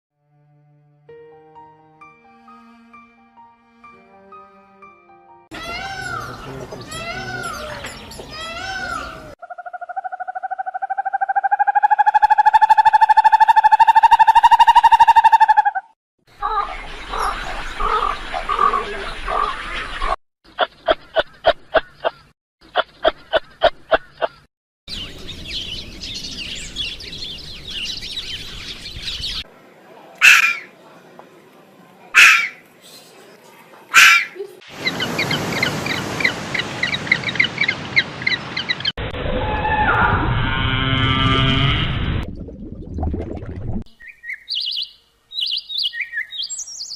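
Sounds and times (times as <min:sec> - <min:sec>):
chorus of chirps: 0:05.5 - 0:11.2, 0:43.9 - 0:46.9
small birds chirping: 0:05.6 - 0:09.4, 0:16.4 - 0:29.5, 0:43.9 - 0:46.9
loud arching animal calls: 0:08.6 - 0:20.2, 0:30.2 - 0:30.7, 0:32.1 - 0:32.6, 0:33.9 - 0:36.3.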